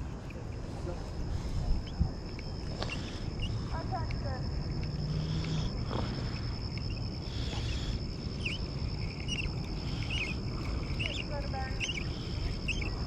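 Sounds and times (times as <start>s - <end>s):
insects trilling: 0.0s - 13.0s
bird chirps: 6.8s - 13.0s.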